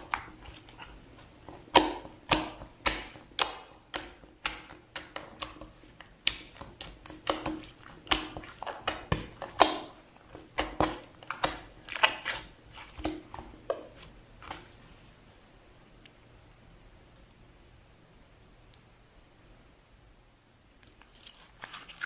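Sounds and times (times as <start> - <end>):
slime squeezed with wet pops: 1.6 - 13.8.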